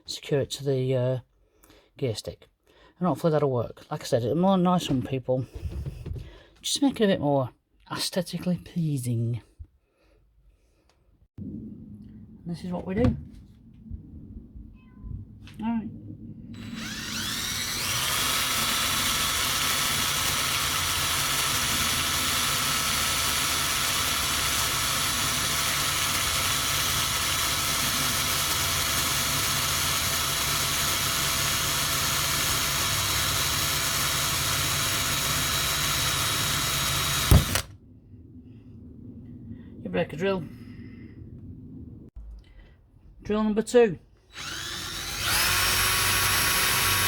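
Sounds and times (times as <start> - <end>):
electric drill running: 16.6 - 37.7, 44.4 - 47.0
drill bit snapping: 16.6 - 37.8, 44.4 - 47.0.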